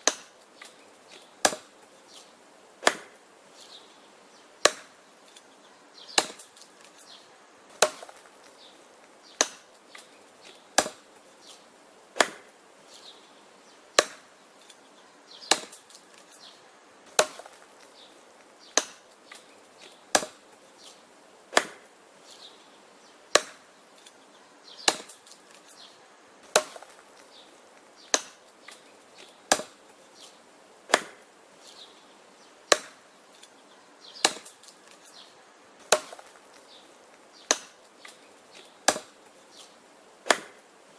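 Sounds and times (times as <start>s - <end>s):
axe chopping wood: 0.0s - 1.9s, 2.8s - 3.2s, 4.6s - 5.4s, 6.1s - 7.0s, 7.7s - 8.6s, 9.3s - 11.3s, 12.2s - 12.5s, 14.0s - 14.7s, 15.4s - 16.3s, 17.1s - 20.6s, 21.5s - 21.9s, 23.3s - 23.7s, 24.8s - 25.7s, 26.4s - 30.0s, 30.9s - 31.3s, 32.7s - 33.0s, 34.2s - 35.2s, 35.8s - 40.6s.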